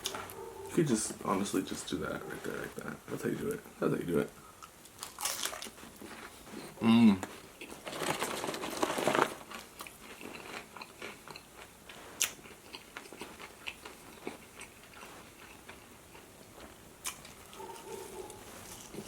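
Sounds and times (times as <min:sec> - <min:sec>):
person chewing crunchy food: 0:00.0 - 0:00.7, 0:04.6 - 0:19.0.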